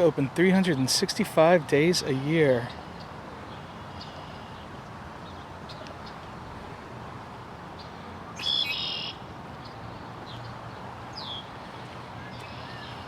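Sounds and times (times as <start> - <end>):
outdoor background noise: 0.0 - 13.0
birds chirping: 7.8 - 13.0.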